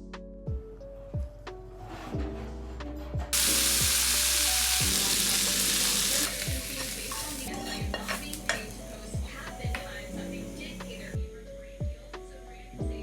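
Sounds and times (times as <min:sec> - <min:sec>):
food sizzling in hot oil: 0:03.4 - 0:11.1.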